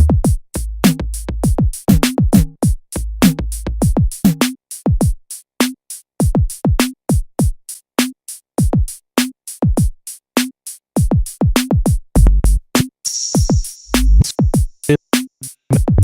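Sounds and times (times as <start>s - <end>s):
deep kick drums: 0.0s - 4.1s, 11.9s - 12.7s, 15.7s - 16.0s
snare drum: 0.1s - 7.0s, 10.4s - 12.0s, 12.8s - 16.0s
low bass notes: 15.7s - 16.0s.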